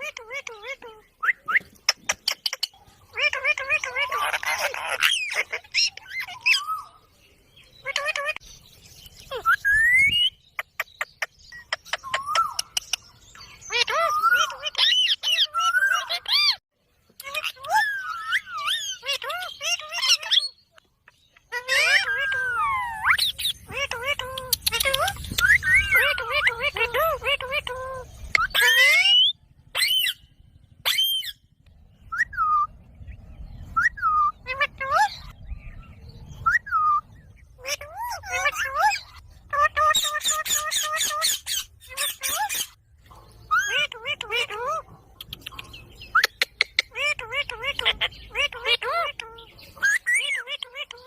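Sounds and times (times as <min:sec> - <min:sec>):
parakeet harsh call: 0:03.1 - 0:06.9, 0:46.9 - 0:51.0
parakeet screeching: 0:03.1 - 0:06.9, 0:13.7 - 0:16.6, 0:17.2 - 0:20.6, 0:21.4 - 0:30.2, 0:30.8 - 0:31.4, 0:37.6 - 0:42.8, 0:43.5 - 0:44.8, 0:46.9 - 0:51.0.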